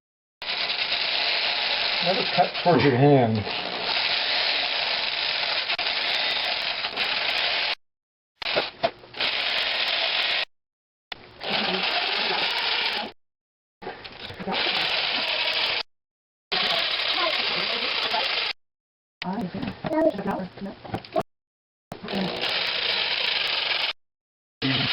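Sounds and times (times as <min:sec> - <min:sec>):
electric jigsaw cutting: 0:00.4 - 0:07.8, 0:08.5 - 0:10.5, 0:11.4 - 0:13.2, 0:14.5 - 0:15.9, 0:16.5 - 0:18.6, 0:22.0 - 0:24.0, 0:24.6 - 0:24.9.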